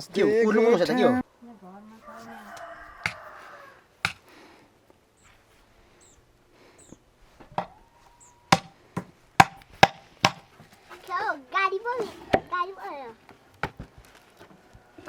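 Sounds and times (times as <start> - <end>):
blade chopping wood: 4.0 - 4.2, 8.5 - 10.6
faint bird chirps: 5.2 - 7.1, 7.7 - 8.5.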